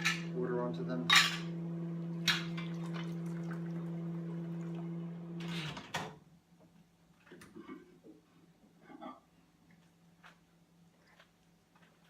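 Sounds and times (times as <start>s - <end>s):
microwave oven humming: 0.0s - 6.2s.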